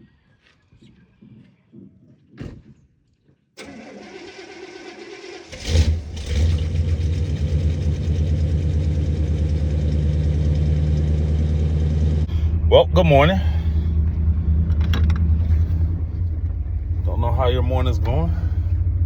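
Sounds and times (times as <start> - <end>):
starter motor whir: 3.6 - 10.1
engine revving and idling: 4.4 - 19.0.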